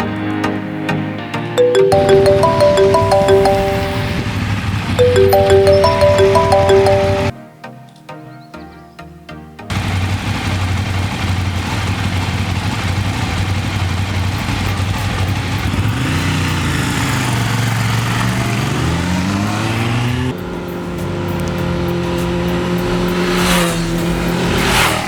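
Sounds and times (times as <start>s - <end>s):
engine accelerating: 9.7s - 25.0s.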